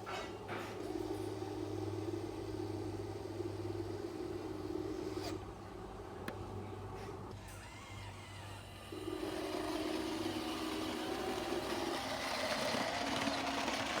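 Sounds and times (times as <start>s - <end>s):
toy excavator motor whine: 7.4s - 14.0s.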